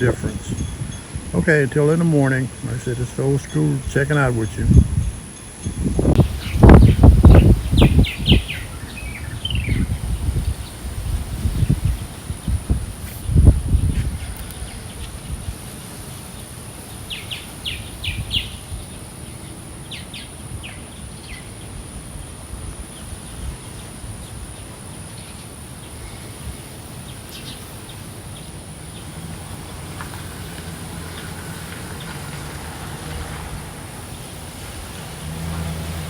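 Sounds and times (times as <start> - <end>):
bird chirps: 0.0 - 10.8
faint high insect whine: 0.0 - 36.0.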